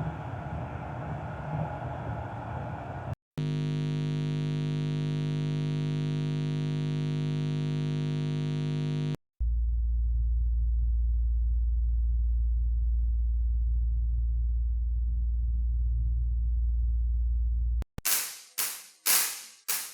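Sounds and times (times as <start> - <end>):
deep low hum: 0.0 - 17.8
overtone-rich buzz: 3.4 - 9.2.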